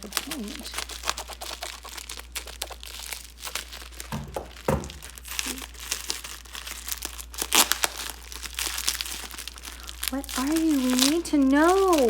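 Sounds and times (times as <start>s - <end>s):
packing wrap crinkling: 0.0s - 12.0s
dull knocks: 4.1s - 5.1s.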